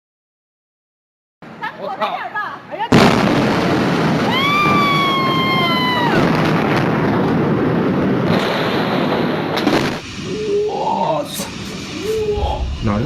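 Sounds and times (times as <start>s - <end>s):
huge explosion roar: 2.9s - 13.0s
high-pitched wailing tone: 10.3s - 13.0s.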